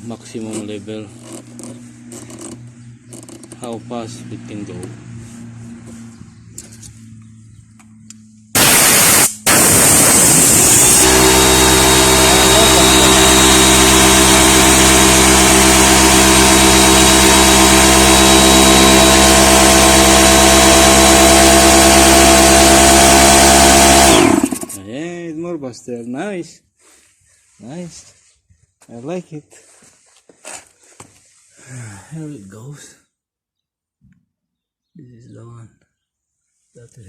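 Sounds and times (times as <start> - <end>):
compressor motor humming: 8.5 - 24.8
compressed air hissing: 8.6 - 12.7.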